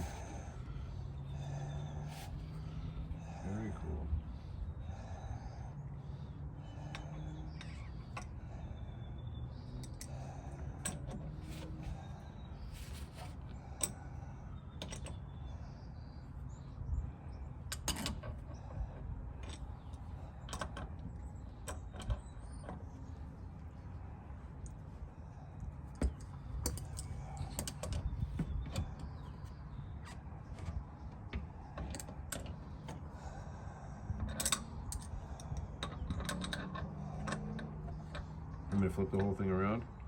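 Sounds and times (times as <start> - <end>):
steady low hum: 0.0 - 40.0
tools and parts clicking: 26.0 - 28.1, 34.2 - 38.2.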